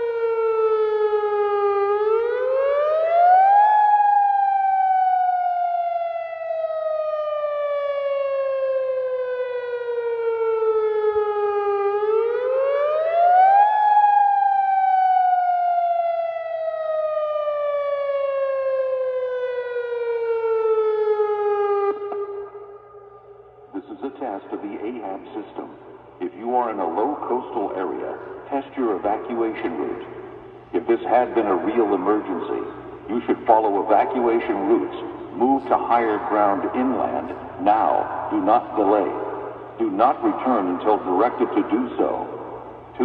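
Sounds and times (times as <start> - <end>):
warning siren wailing: 0.0 - 23.8.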